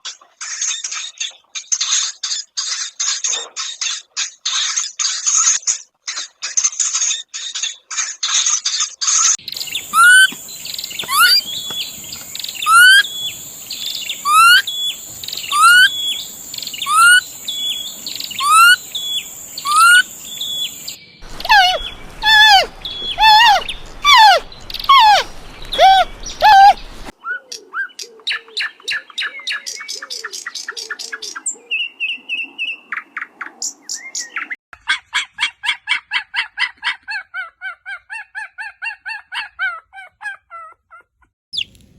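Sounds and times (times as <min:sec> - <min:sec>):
rapid bird chattering: 0:09.4 - 0:27.1
bird calls: 0:09.4 - 0:34.6.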